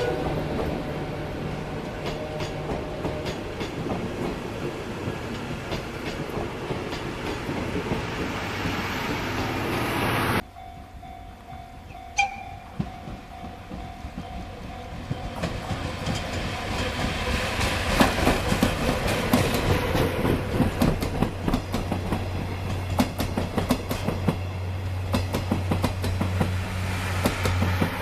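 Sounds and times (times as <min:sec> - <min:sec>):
train wheels clattering over rail joints: 0:01.8 - 0:09.6, 0:12.7 - 0:28.0.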